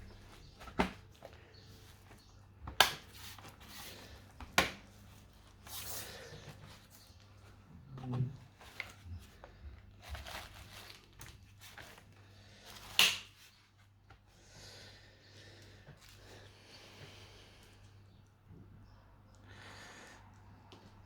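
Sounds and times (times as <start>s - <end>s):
hands handling laptop parts: 0.1s - 13.4s.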